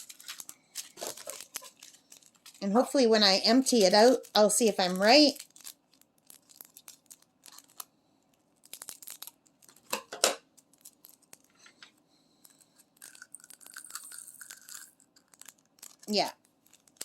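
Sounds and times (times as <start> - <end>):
scissors snipping plastic bag: 0.0 - 2.7, 3.6 - 5.7
plastic rustling: 0.0 - 17.0.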